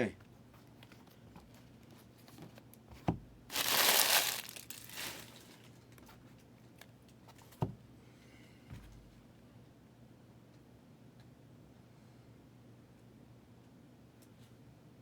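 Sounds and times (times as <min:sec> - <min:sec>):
wrapper tearing and crinkling: 0:03.5 - 0:05.7.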